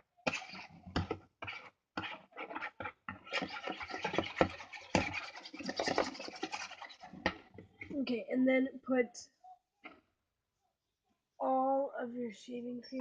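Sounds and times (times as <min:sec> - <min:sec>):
tool scraping bowl of slime: 0:00.0 - 0:08.0.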